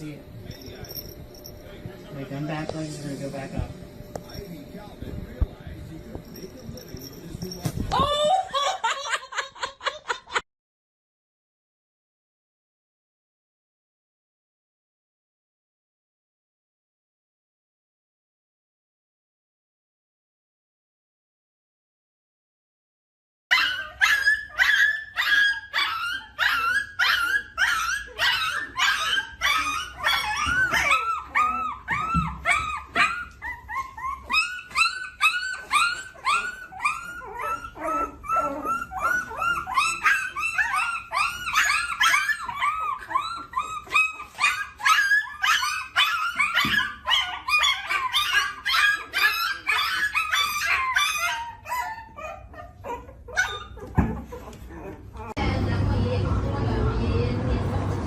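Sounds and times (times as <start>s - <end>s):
dog yipping: 23.5s - 55.4s.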